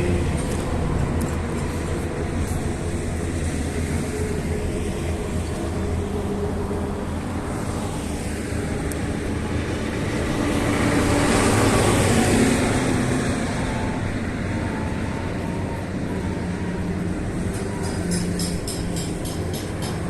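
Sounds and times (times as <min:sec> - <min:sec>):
traffic hum: 0:00.0 - 0:20.0
vehicle passing close by: 0:00.0 - 0:20.0.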